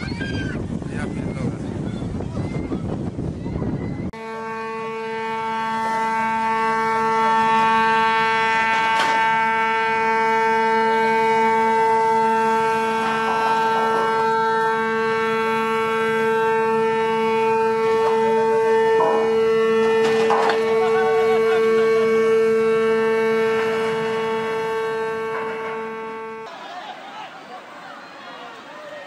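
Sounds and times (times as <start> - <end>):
ship's horn blast: 4.1 - 26.5.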